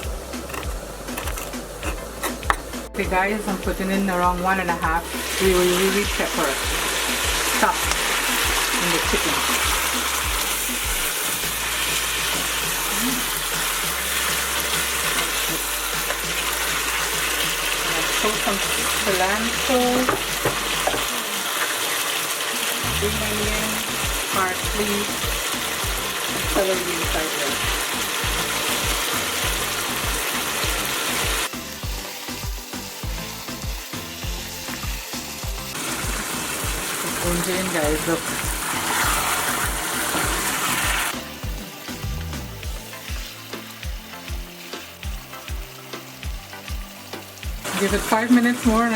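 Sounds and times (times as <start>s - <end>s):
chicken sizzling in oil: 0.0s - 48.9s.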